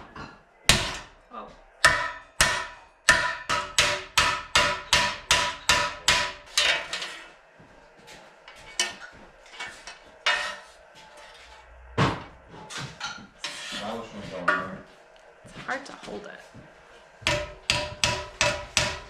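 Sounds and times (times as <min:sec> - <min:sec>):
hammer striking steel: 0:00.7 - 0:01.1, 0:01.8 - 0:07.2, 0:17.2 - 0:19.0.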